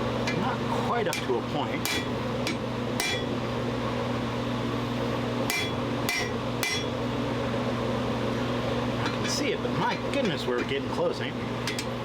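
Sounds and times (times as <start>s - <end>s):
hammer striking hot steel: 1.1s - 3.4s, 5.4s - 7.0s
metallic ring: 1.9s - 3.4s, 5.5s - 7.0s.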